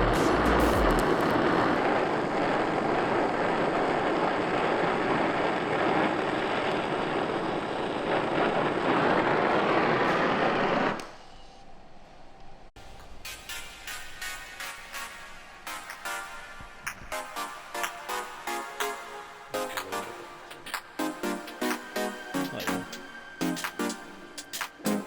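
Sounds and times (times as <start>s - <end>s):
low thumps: 0.0s - 1.4s
gas torch flame hissing: 0.0s - 11.0s.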